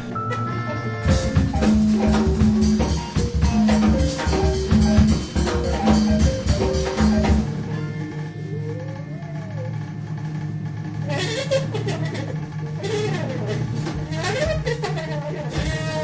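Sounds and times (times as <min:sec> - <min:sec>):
repeating bass pattern: 0:00.0 - 0:07.6
drum kit: 0:00.0 - 0:07.8, 0:12.8 - 0:14.9, 0:15.5 - 0:16.0.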